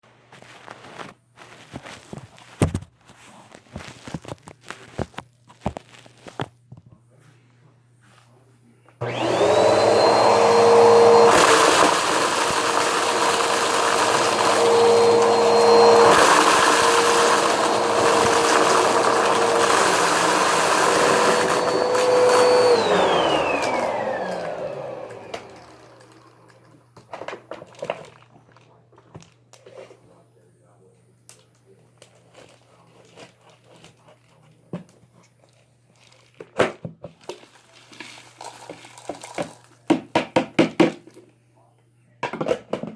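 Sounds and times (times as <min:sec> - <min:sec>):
vacuum cleaner running: 0:09.0 - 0:27.4.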